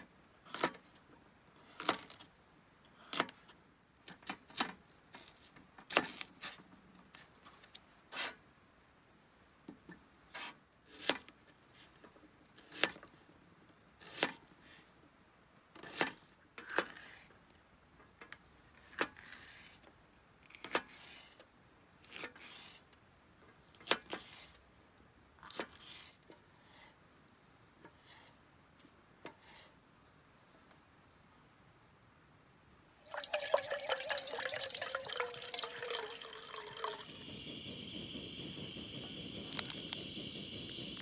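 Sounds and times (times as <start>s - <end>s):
brief scrape: 8.1s - 8.4s.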